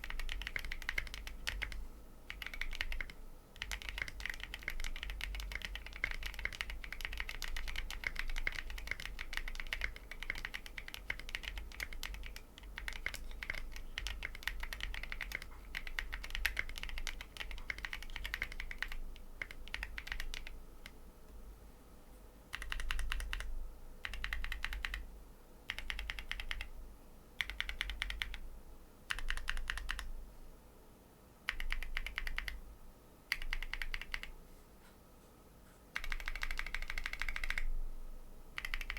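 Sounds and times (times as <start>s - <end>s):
typing on mechanical keyboard: 0.0s - 21.0s, 22.5s - 25.0s, 25.7s - 26.7s, 27.4s - 28.4s, 29.1s - 30.1s, 31.5s - 32.6s, 33.3s - 34.3s, 36.0s - 37.7s, 38.6s - 38.9s.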